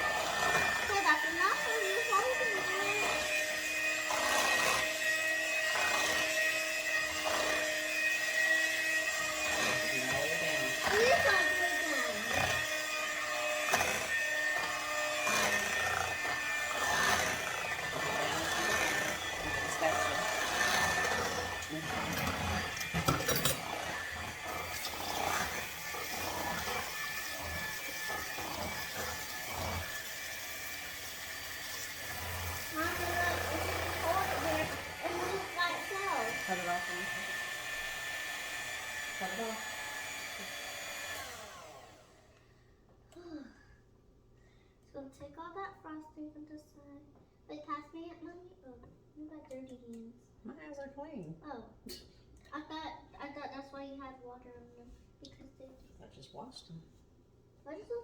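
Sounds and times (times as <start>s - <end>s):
small appliance motor humming: 0.0s - 42.5s
utensils and dishes clinking: 18.3s - 34.8s.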